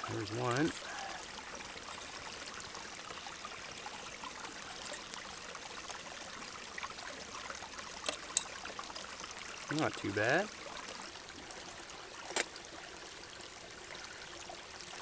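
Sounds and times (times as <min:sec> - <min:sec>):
stream rushing: 0:00.0 - 0:01.3, 0:09.7 - 0:10.6.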